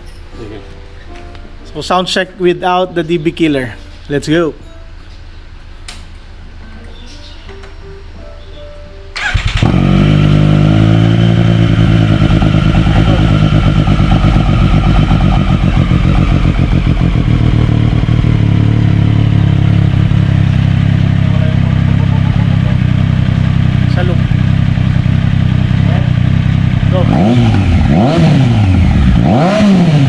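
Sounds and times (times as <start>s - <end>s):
loud motorcycle engine running: 9.2s - 30.0s.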